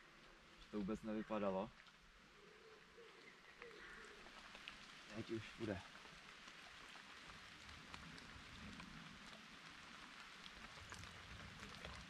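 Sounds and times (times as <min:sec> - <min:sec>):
light rain patter: 0:00.0 - 0:12.0
small ticks: 0:03.6 - 0:05.2, 0:05.8 - 0:12.0.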